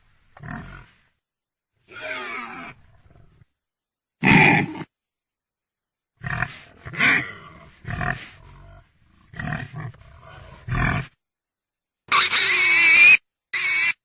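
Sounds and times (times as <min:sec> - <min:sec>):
pig squealing: 0:01.9 - 0:02.8, 0:12.1 - 0:14.0
pig grunting: 0:04.2 - 0:04.9, 0:06.2 - 0:11.2.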